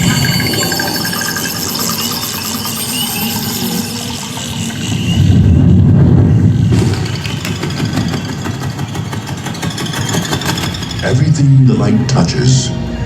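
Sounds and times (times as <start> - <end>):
deep rumbling sound effect: 0.0 - 8.8.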